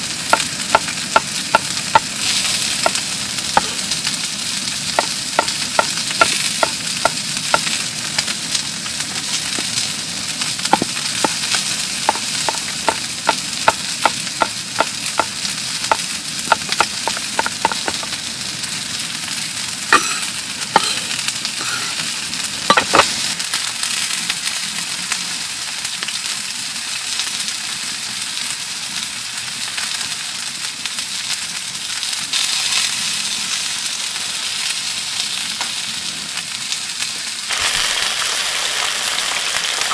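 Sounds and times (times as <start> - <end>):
food sizzling in a pan: 0.0 - 39.9
utensil clicking against pan: 5.0 - 7.8, 10.7 - 18.2.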